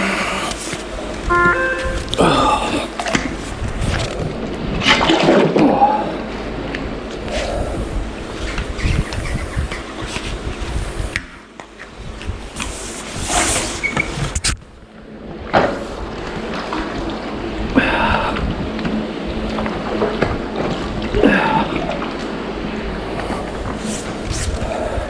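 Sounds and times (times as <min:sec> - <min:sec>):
water sloshing around wading person: 0:00.0 - 0:11.1.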